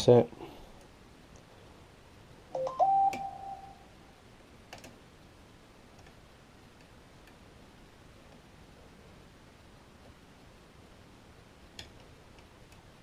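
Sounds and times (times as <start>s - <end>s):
steady electronic tone: 2.6s - 4.0s.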